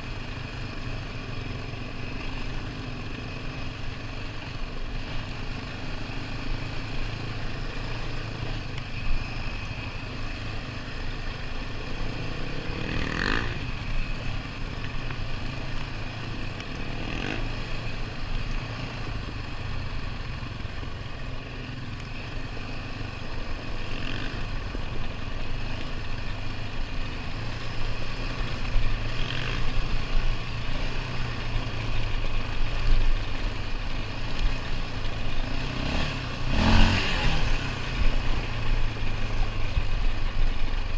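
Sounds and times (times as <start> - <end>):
atv engine running: 0.0 - 40.9.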